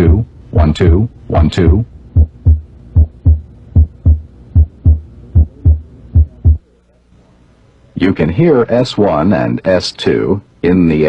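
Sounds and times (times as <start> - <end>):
heartbeat lub-dub thumps: 1.7 - 6.6.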